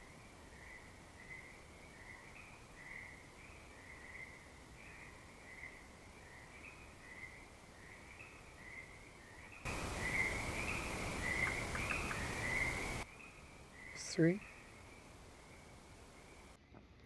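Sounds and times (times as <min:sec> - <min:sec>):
crickets chirping: 0:00.2 - 0:16.5
even hiss: 0:09.6 - 0:16.6.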